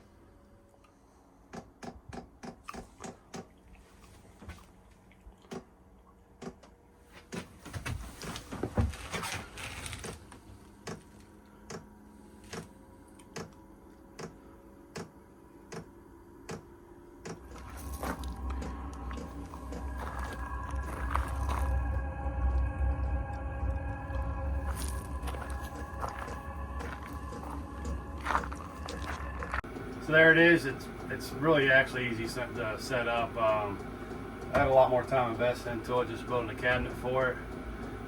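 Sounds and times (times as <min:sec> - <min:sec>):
blower fan hum: 0:00.0 - 0:38.0
low rumble: 0:17.4 - 0:34.8
heater fuel pump ticking: 0:29.5 - 0:38.0.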